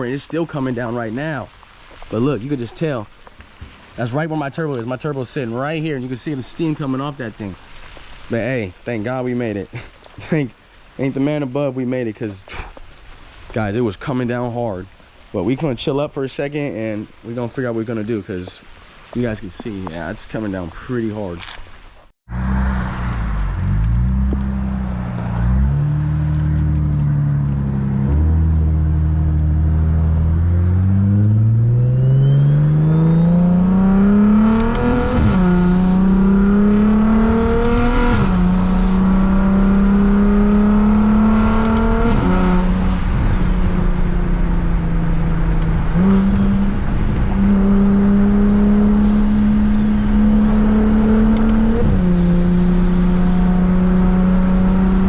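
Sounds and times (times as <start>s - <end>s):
car engine accelerating: 22.3s - 55.0s.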